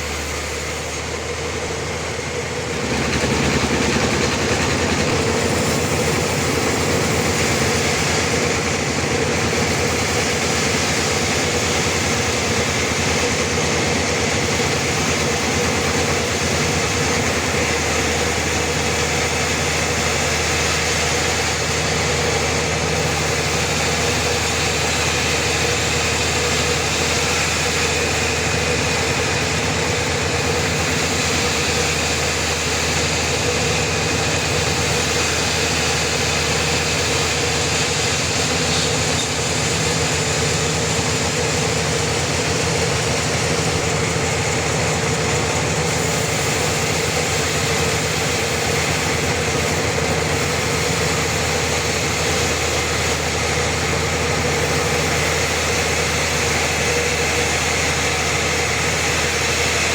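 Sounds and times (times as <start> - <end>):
sawmill machinery droning: 0.0 - 59.9.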